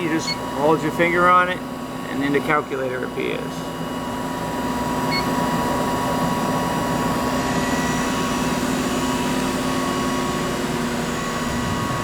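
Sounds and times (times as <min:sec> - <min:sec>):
grinder humming and whining: 0:00.0 - 0:12.0.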